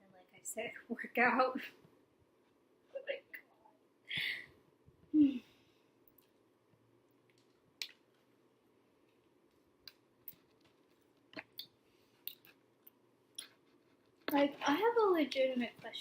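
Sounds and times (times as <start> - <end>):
woman sighing a word: 5.1 - 5.7.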